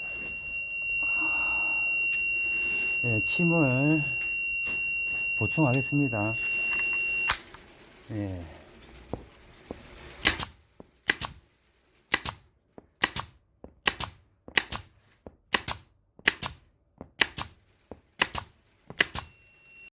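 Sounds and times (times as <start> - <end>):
pneumatic nailer shots: 9.1 - 19.4.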